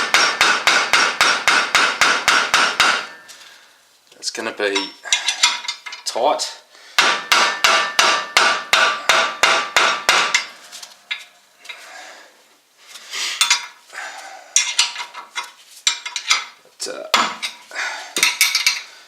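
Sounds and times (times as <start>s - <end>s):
sharp metallic knocks: 0.0s - 3.3s, 7.0s - 11.2s
tools clinking on metal: 4.7s - 6.1s, 14.6s - 17.6s, 18.2s - 18.9s.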